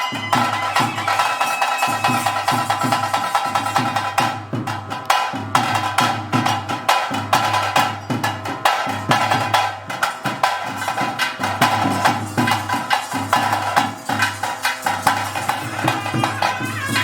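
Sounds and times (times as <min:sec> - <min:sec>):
reed pipe melody: 0:00.0 - 0:03.4, 0:14.0 - 0:17.0
drums beating fast rhythm: 0:00.0 - 0:17.0.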